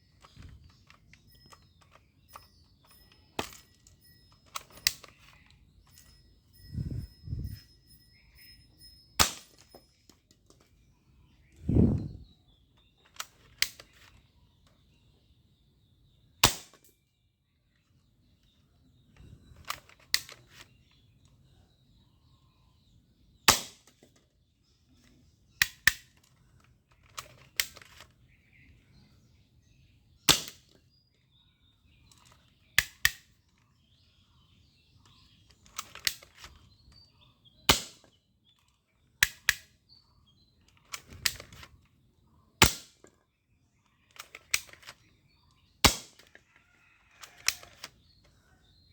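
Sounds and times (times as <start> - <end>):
toy air rifle shots: 9.2 - 9.8, 16.4 - 16.9, 23.5 - 24.0, 30.3 - 30.8, 32.8 - 33.4, 37.7 - 38.1, 42.6 - 43.0, 45.8 - 46.3.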